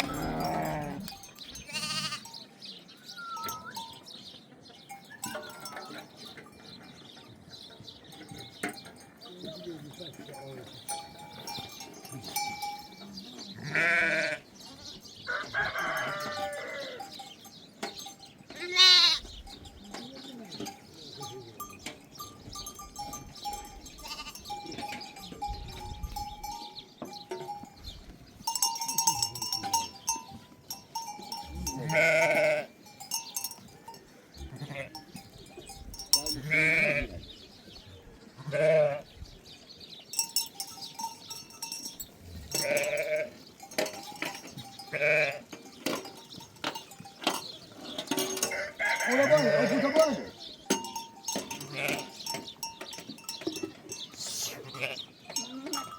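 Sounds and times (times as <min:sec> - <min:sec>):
sheep bleating: 0:00.0 - 0:02.4, 0:13.5 - 0:14.5, 0:18.5 - 0:19.3, 0:23.9 - 0:24.5, 0:31.4 - 0:32.8, 0:34.4 - 0:35.0, 0:36.3 - 0:37.2, 0:38.4 - 0:39.1, 0:42.6 - 0:43.4, 0:44.9 - 0:45.4, 0:48.5 - 0:50.4, 0:51.6 - 0:52.2, 0:54.2 - 0:55.8
animal bells ringing: 0:00.0 - 0:37.6, 0:39.4 - 0:55.9.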